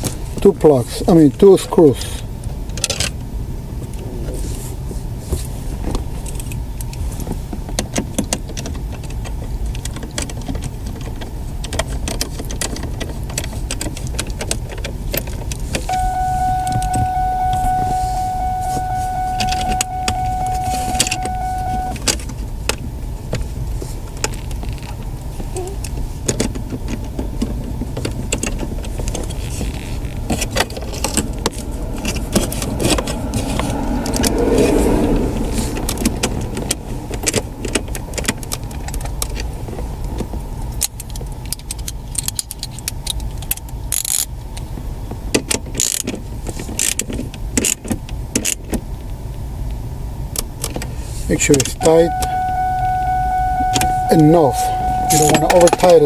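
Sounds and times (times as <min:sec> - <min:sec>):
electronic beep tone: 0:15.9 - 0:22.0, 0:51.8 - 0:56.0
steady low hum: 0:15.9 - 0:22.1, 0:51.8 - 0:56.0.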